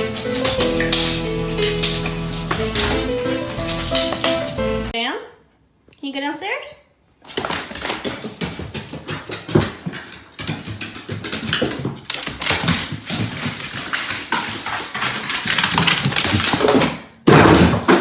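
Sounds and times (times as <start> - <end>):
dog claws clicking and scuffling: 7.2 - 17.0.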